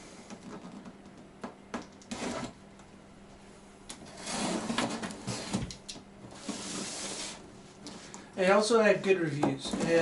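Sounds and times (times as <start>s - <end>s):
short scrape: 4.1s - 5.6s, 6.4s - 7.4s
cardboard rubbing and sliding: 4.1s - 5.7s, 6.3s - 7.4s.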